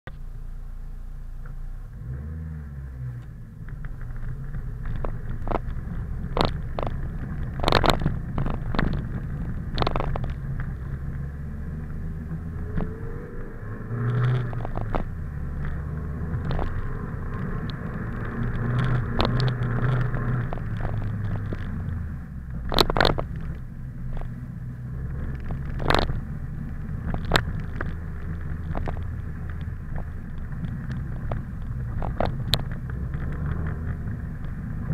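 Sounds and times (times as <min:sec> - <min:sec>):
car engine revving: 0:01.4 - 0:34.9
sharp knocks and clicks: 0:03.2 - 0:11.0, 0:14.0 - 0:22.0, 0:22.6 - 0:24.4, 0:25.1 - 0:34.9.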